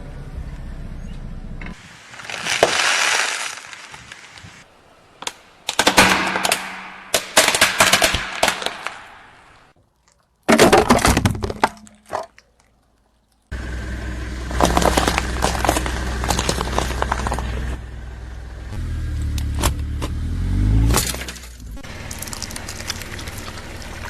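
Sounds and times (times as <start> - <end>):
car low rumble: 0.0 - 1.9, 13.5 - 24.0.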